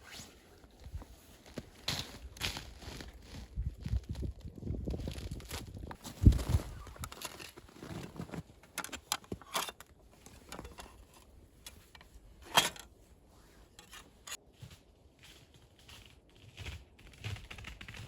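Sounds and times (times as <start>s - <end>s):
crunching and rustling: 0.8s - 9.5s.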